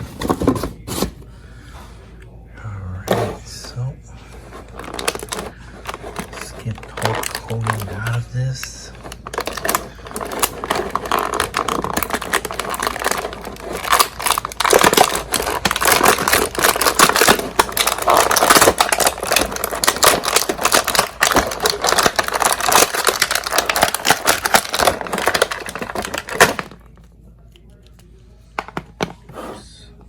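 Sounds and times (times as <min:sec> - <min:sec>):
plastic packaging crinkling: 0:04.4 - 0:27.0.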